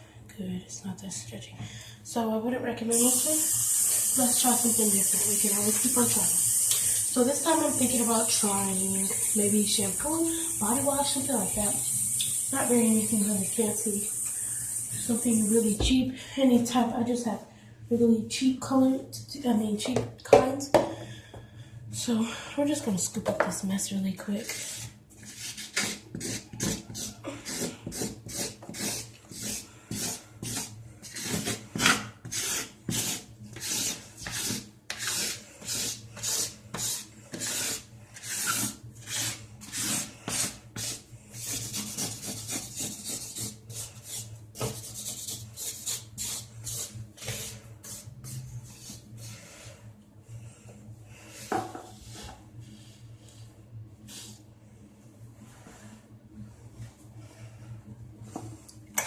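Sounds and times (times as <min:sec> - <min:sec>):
slime scraping strokes: 0:24.4 - 0:49.5.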